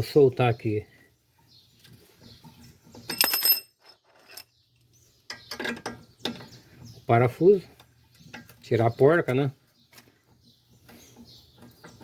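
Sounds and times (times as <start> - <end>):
ringing metallic clatter: 3.0 - 4.5
wrench clinking against metal: 3.1 - 4.5.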